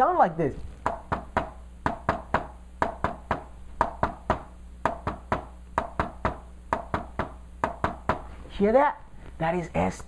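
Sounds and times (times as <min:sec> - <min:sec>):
quick knocking taps: 0:00.8 - 0:08.2.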